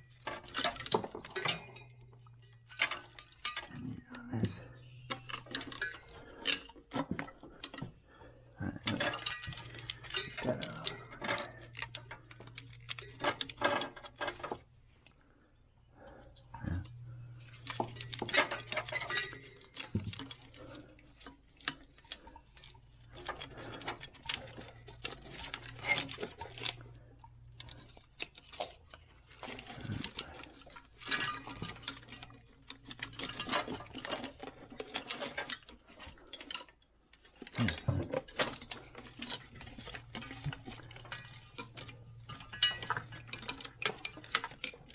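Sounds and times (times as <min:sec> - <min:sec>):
steady low hum: 0:00.0 - 0:34.8
hand tools clinking on engine: 0:16.9 - 0:20.5, 0:37.6 - 0:44.9.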